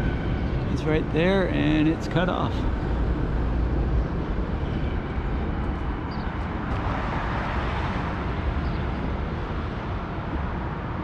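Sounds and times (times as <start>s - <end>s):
busy street traffic: 0.0s - 11.0s.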